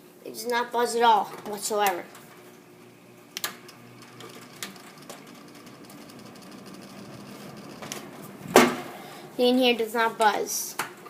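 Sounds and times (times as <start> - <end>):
faint steady hum: 0.0 - 11.0
box fan clicks and knocks: 3.4 - 8.9.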